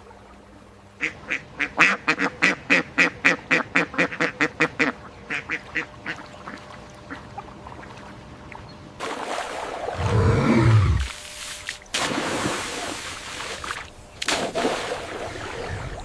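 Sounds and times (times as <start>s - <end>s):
duck quacking: 1.0s - 7.2s.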